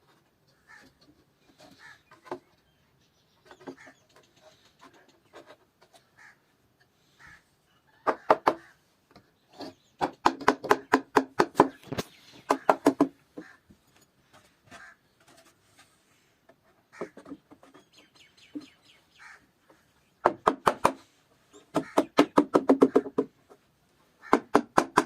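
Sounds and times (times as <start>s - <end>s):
sharp knocks on wood: 10.0s - 13.5s, 20.2s - 21.0s, 21.7s - 23.4s, 24.3s - 25.0s.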